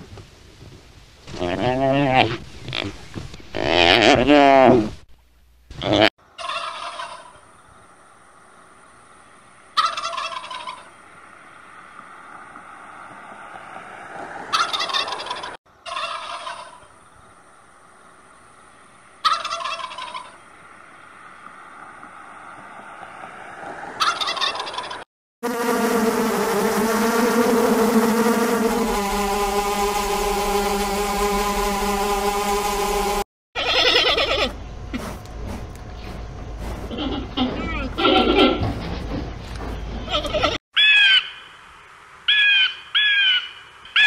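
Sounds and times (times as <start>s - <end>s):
low steady hiss: 0.0s - 2.6s, 16.8s - 19.3s, 41.3s - 44.0s
steady pitched tone: 25.4s - 33.3s.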